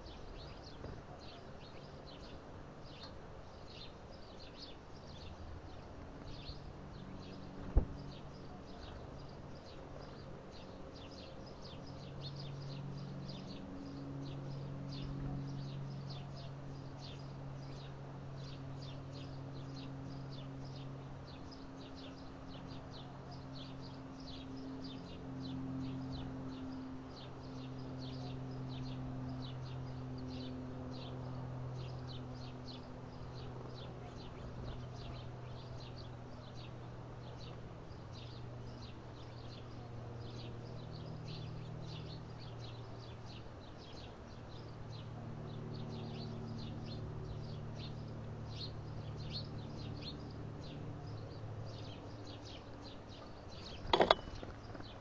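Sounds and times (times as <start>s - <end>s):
small birds chirping: 0.0s - 55.0s.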